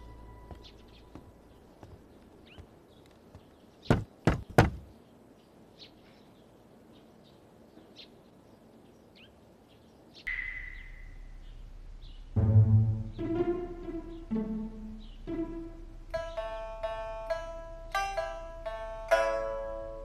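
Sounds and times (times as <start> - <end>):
birds chirping: 0.0 - 19.4
sharp knocks: 3.9 - 4.9.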